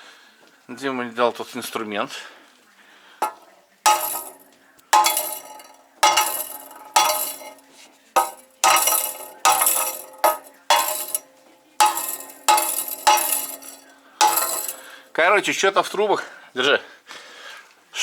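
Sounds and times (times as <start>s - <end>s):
metal knocks ringing: 3.2s - 15.2s.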